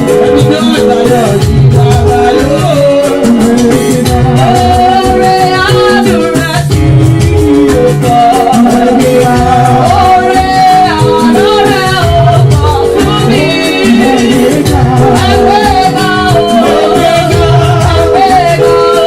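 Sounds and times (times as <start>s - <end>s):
band with steady beat: 0.0s - 19.0s
rattle-like percussion: 0.0s - 19.0s
voices singing: 12.7s - 19.0s.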